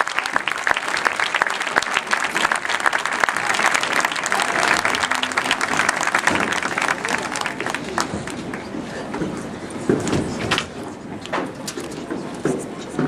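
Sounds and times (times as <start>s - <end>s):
crowd applauding: 0.0s - 9.2s.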